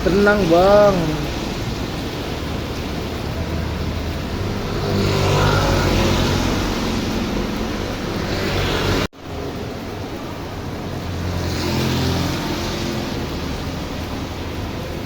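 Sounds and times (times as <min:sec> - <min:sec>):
car engine humming: 0:00.0 - 0:15.0
heavy rain pouring: 0:00.0 - 0:15.0
tyres on wet road: 0:00.0 - 0:15.0.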